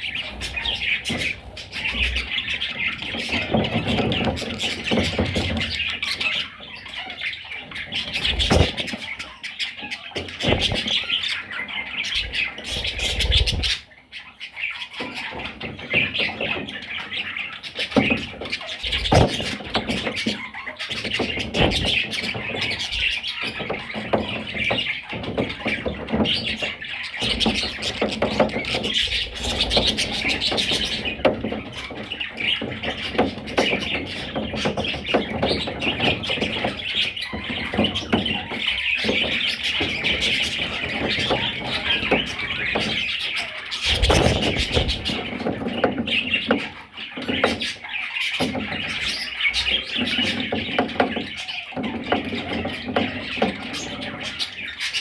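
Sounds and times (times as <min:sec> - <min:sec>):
bird squawks: 0:00.0 - 0:55.0
budgerigars chattering and warbling: 0:00.0 - 0:55.0.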